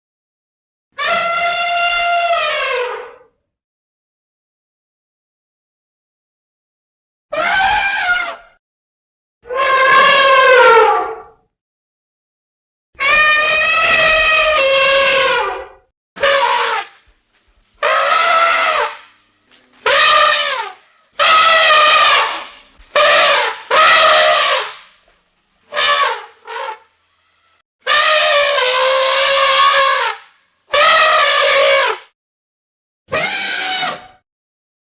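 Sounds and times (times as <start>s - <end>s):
elephant trumpet calls: 1.0s - 3.3s, 7.3s - 8.5s, 9.4s - 11.2s, 13.0s - 17.2s, 17.8s - 25.0s, 25.6s - 32.1s, 33.1s - 34.2s.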